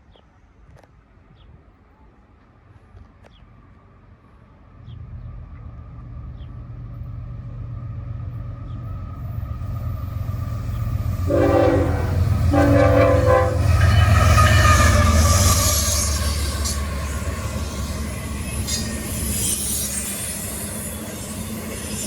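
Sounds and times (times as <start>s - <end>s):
train passing noise: 1.0s - 22.0s
diesel locomotive rumble: 1.9s - 22.0s
train horn blasts: 11.2s - 16.8s.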